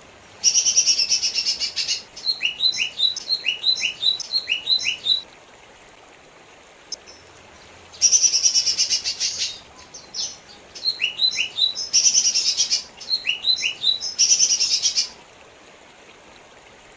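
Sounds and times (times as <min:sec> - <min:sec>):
running water hiss: 0:00.0 - 0:16.9
bird singing trills and whistles: 0:00.5 - 0:05.2, 0:08.0 - 0:15.2.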